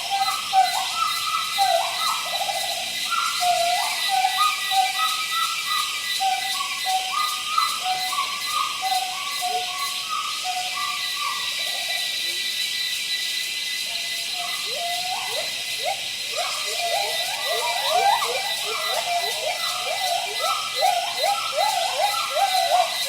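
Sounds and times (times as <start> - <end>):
monkeys chirping: 0.0 - 23.0
steady high hiss: 0.0 - 23.0.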